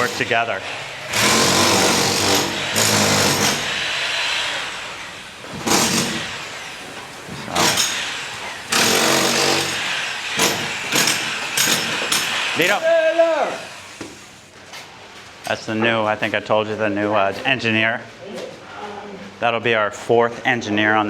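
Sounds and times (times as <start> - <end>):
power tool running in bursts: 0.0 - 6.8, 7.5 - 12.8.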